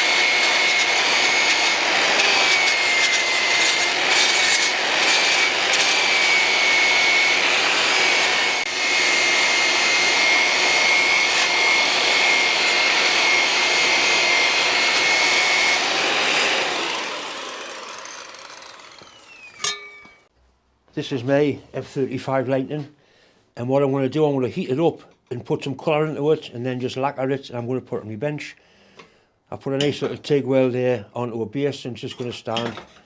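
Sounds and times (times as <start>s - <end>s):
power tool hissing and whistling: 0.0s - 20.3s.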